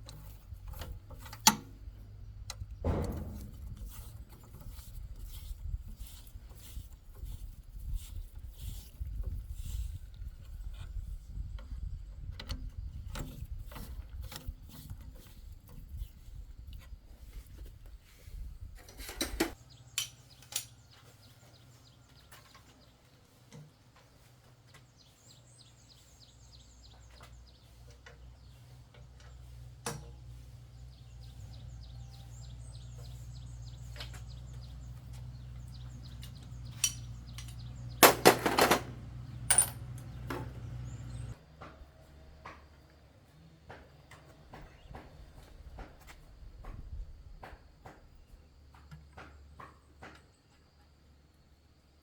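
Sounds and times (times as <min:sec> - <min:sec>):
metal tools clinking: 0:36.1 - 0:40.6
loud metal clattering: 0:38.0 - 0:39.8.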